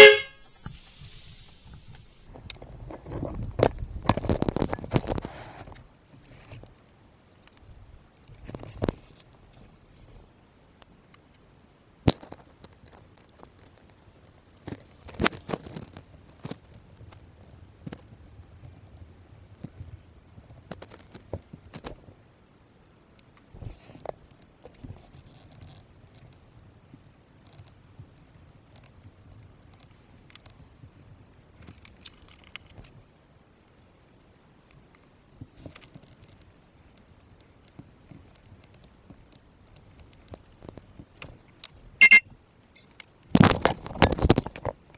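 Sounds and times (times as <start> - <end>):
tools and small parts clicking: 42.0 - 42.2.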